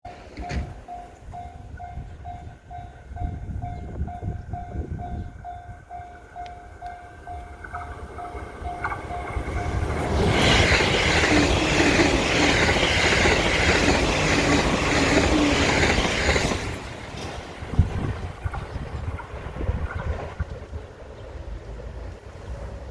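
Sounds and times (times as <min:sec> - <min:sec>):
train wheels clacking on rail joints: 0:00.1 - 0:02.4, 0:06.4 - 0:21.5
wind rumble on microphone: 0:00.5 - 0:06.0, 0:16.0 - 0:21.5.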